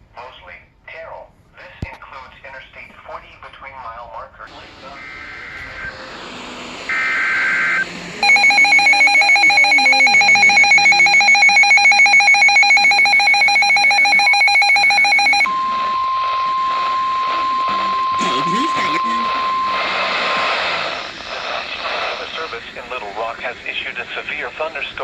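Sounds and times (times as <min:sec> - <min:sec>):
steady high warning tone: 0:04.5 - 0:23.0
rapidly pulsing alert tone: 0:06.9 - 0:20.2
warbling data bursts: 0:06.9 - 0:20.3.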